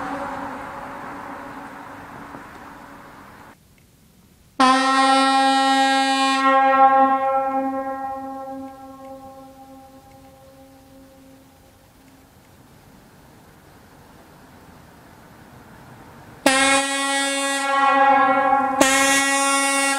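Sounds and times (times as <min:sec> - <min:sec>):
locomotive air horn blast: 0:00.0 - 0:03.4, 0:04.6 - 0:11.6, 0:16.4 - 0:19.9.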